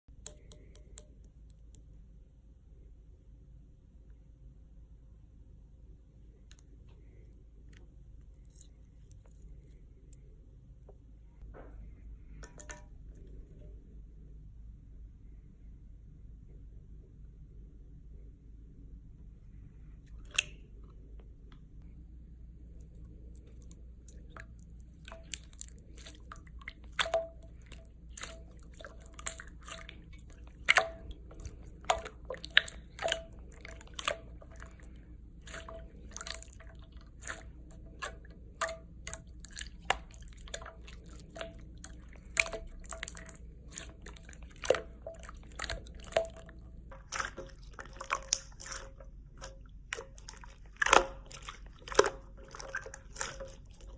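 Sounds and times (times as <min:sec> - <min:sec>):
slime squished by hand: 0:23.3 - 0:53.9.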